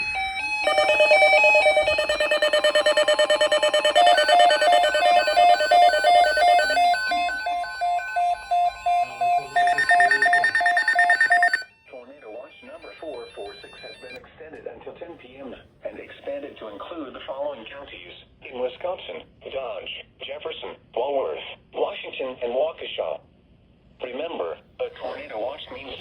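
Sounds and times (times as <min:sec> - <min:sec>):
electronic alert beeps: 0:00.5 - 0:11.6.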